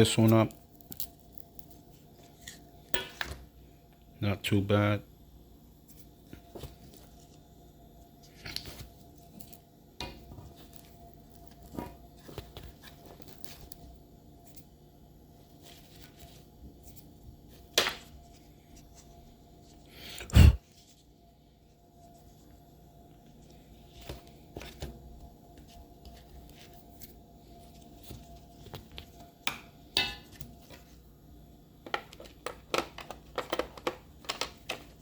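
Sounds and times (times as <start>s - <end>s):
plastic parts clicking and rustling: 31.8s - 35.0s.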